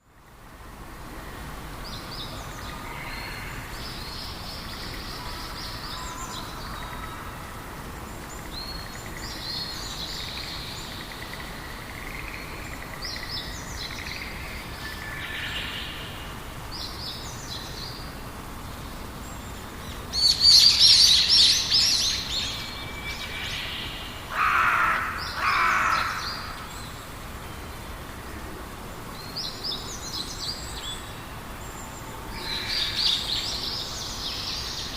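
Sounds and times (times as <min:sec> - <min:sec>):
low background noise: 0:00.0 - 0:34.9
birds singing: 0:18.8 - 0:28.0, 0:28.8 - 0:34.9.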